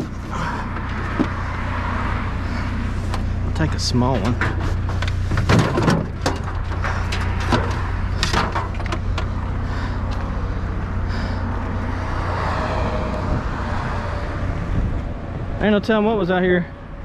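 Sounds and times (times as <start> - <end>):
vehicle engine running: 0.0 - 17.0
junk knocking and clattering: 3.1 - 9.4.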